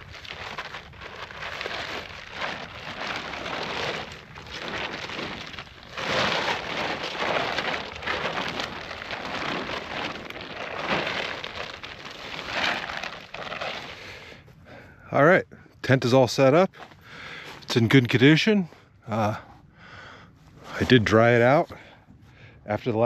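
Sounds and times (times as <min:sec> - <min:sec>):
plastic tarp and fabric rustling: 0:00.0 - 0:14.2.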